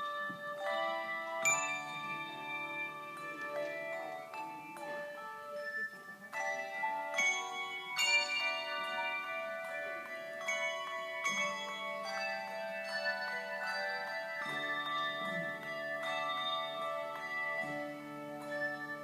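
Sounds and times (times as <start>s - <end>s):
handbells ringing chords: 0.0s - 19.0s
lower bell: 0.0s - 19.0s.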